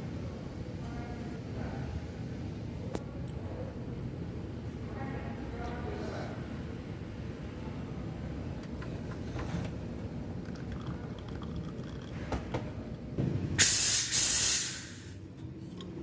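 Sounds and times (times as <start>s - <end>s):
steam wand hissing: 13.6s - 15.2s.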